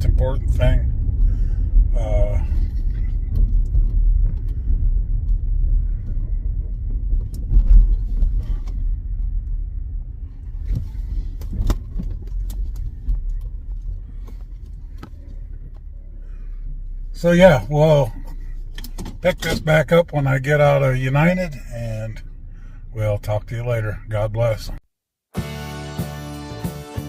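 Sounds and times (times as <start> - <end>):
car rumble from inside cabin: 0.0 - 24.8.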